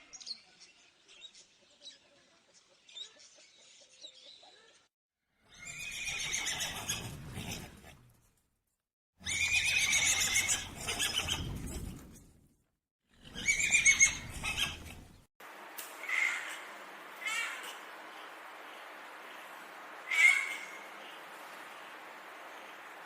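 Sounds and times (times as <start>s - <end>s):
horse whinnying: 5.6s - 7.8s, 9.2s - 12.0s, 13.2s - 15.1s.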